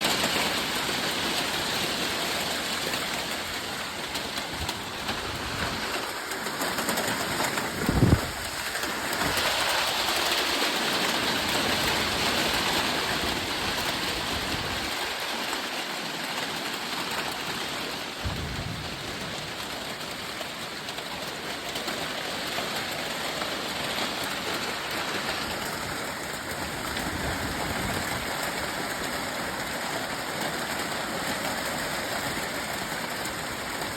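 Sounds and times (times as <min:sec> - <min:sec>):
hail and heavy rain: 0:00.0 - 0:33.9
low thumps: 0:18.2 - 0:20.1.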